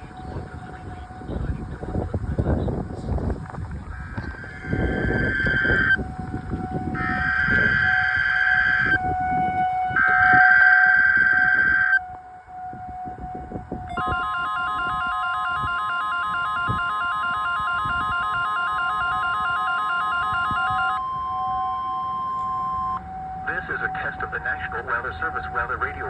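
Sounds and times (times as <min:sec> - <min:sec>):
steady warning alarm tone: 0:00.0 - 0:24.2
outdoor warning siren tone: 0:00.0 - 0:25.7
buzzing data bursts: 0:14.0 - 0:21.0
fast alternating alert beeping: 0:14.0 - 0:21.0.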